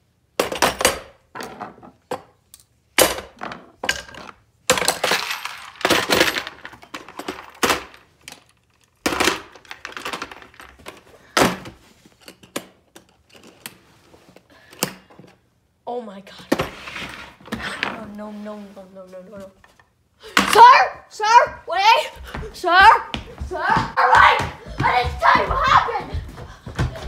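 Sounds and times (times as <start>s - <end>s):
hard objects clattering: 3.0s - 13.7s.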